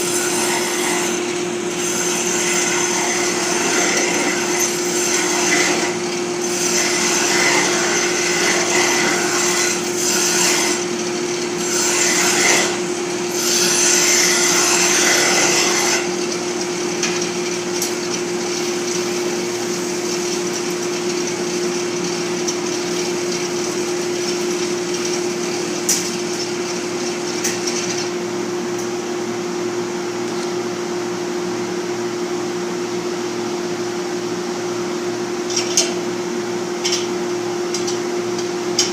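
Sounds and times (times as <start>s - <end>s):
tool scraping spinning wood: 0.0s - 28.3s.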